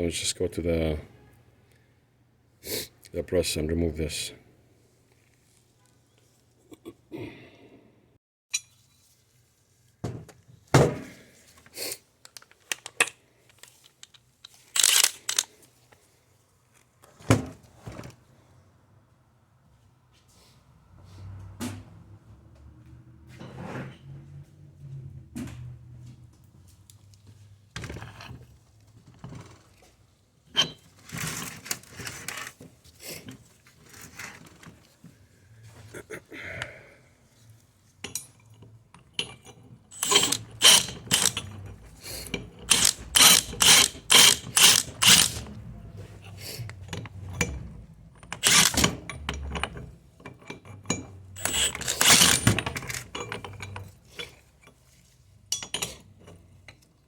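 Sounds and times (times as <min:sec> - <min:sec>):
metal tools clanking: 0:14.0 - 0:15.5, 0:38.0 - 0:54.9, 0:55.5 - 0:56.8
metallic strokes: 0:40.0 - 0:46.7, 0:48.3 - 0:48.9.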